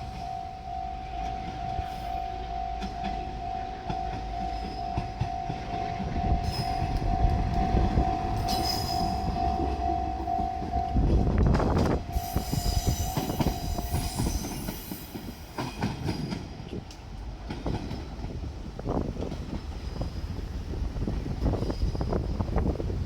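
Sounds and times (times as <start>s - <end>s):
train wheels squealing: 0.0s - 11.0s, 11.8s - 16.6s, 21.3s - 23.0s
level crossing bell ringing: 0.0s - 14.6s.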